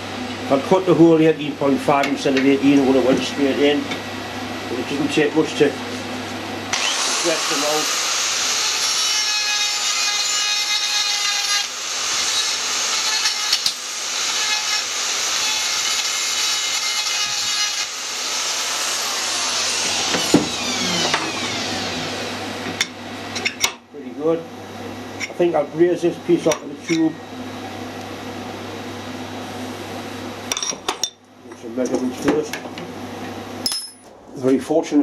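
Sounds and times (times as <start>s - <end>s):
rotary tool grinding metal: 6.7s - 22.3s.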